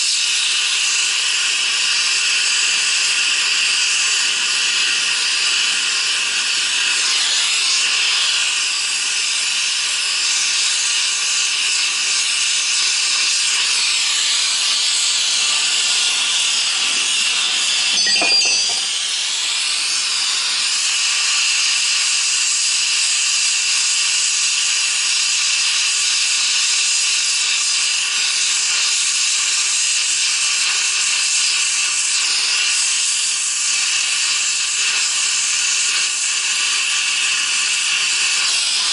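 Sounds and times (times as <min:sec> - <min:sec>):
welding torch flame hissing: 0:00.0 - 0:38.9
metallic clatter: 0:17.6 - 0:19.0.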